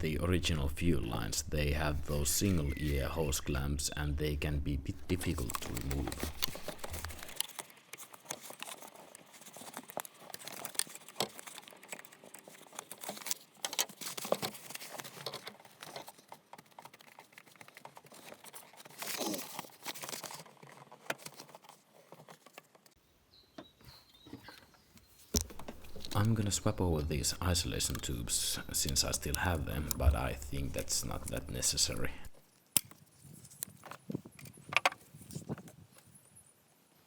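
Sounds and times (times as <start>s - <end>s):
hand tool clicks and scrapes: 5.2s - 21.4s
rubber hoses pulled off pipes: 5.2s - 23.0s.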